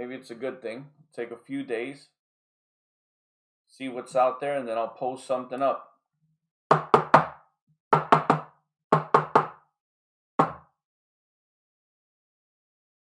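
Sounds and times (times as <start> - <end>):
sharp knocks: 6.7 - 7.4, 8.0 - 9.6, 10.4 - 10.6.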